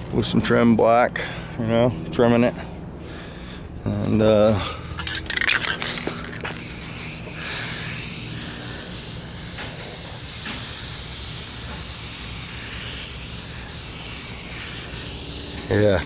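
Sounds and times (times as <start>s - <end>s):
spray paint can hissing: 5.0s - 16.0s.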